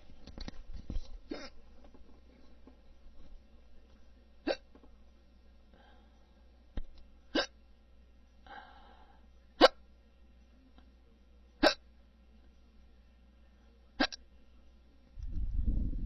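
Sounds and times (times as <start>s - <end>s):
soft breathy sound: 5.7s - 6.6s, 8.4s - 9.4s
person hiccupping: 7.4s - 7.6s.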